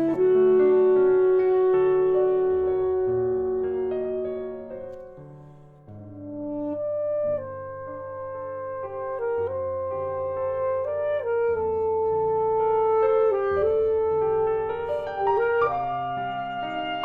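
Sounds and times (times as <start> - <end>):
alto saxophone melody: 0.0 - 17.0
piano accompaniment: 0.0 - 17.0.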